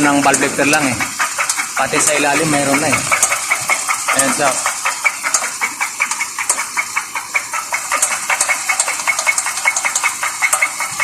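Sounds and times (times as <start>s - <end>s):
car engine idling: 0.0s - 11.0s
rapid metallic engine knock: 0.0s - 11.0s.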